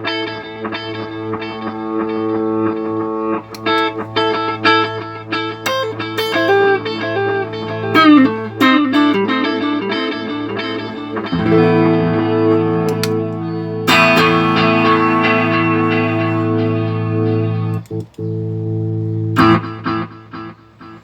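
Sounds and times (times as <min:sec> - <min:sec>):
electric guitar with delay: 0:00.0 - 0:21.0.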